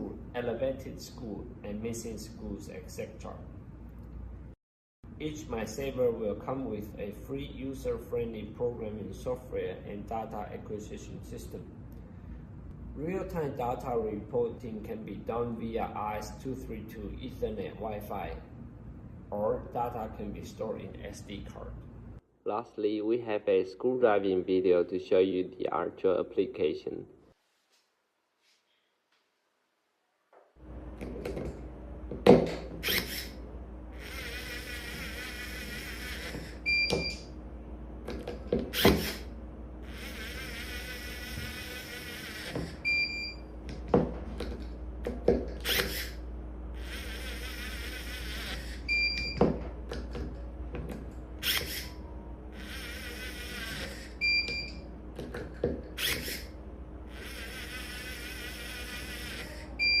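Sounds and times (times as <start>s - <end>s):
steady low hum: 0.0s - 27.2s, 30.6s - 60.0s
electric screwdriver whining: 32.8s - 37.2s, 38.5s - 43.1s, 45.6s - 46.2s, 46.8s - 49.4s, 51.4s - 54.7s, 55.9s - 56.5s, 57.1s - 60.0s.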